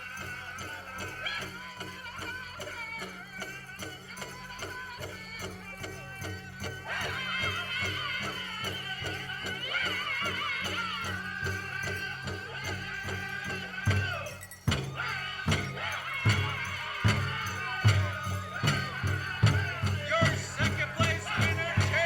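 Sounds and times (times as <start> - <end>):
steady drumbeat: 6.2 - 22.0
group singing high-pitched: 6.6 - 22.0.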